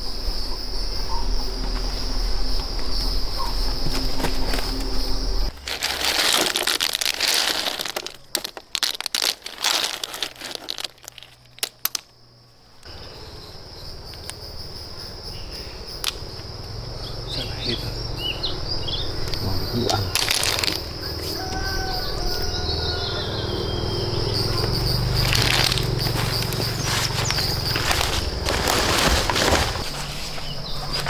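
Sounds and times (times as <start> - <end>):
high insect drone: 0.0 - 31.0
vegetation crackling and rustling: 1.1 - 12.1, 19.2 - 22.9, 24.1 - 31.0.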